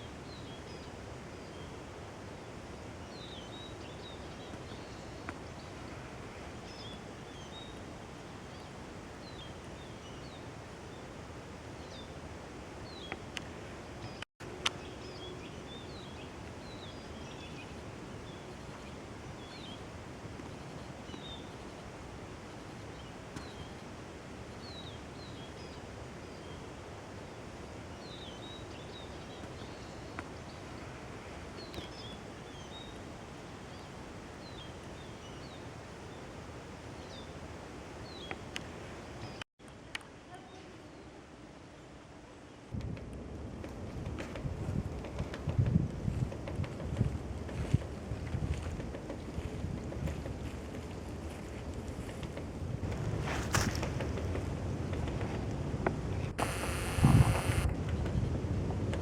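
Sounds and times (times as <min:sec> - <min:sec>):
forest noise haze: 0:52.8 - 0:57.8
small birds calling: 0:56.3 - 0:57.7
sharp clicks: 0:56.4 - 0:57.8.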